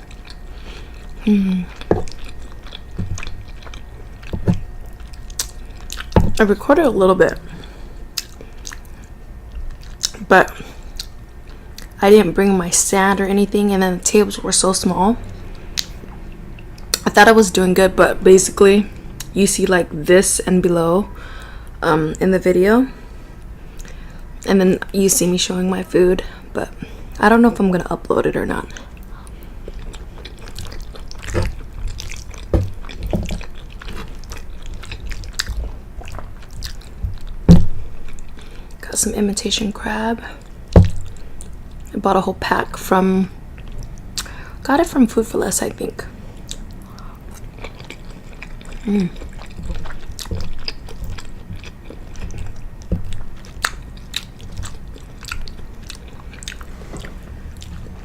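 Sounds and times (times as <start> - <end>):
person chewing with mouth clicks: 0.0 - 6.4, 7.3 - 12.0, 15.3 - 17.1, 23.4 - 24.5, 28.7 - 38.8, 43.6 - 44.4, 46.3 - 58.0
wet mouth clicks and smacks: 8.2 - 8.9, 15.8 - 16.0.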